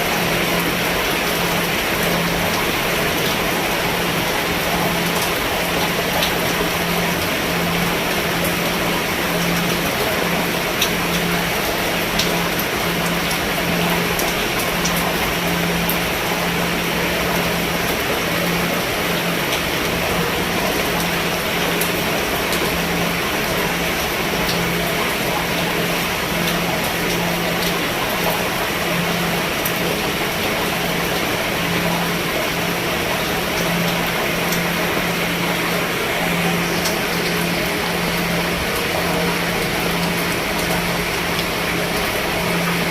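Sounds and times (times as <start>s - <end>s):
rain on a roof: 0.0s - 42.9s.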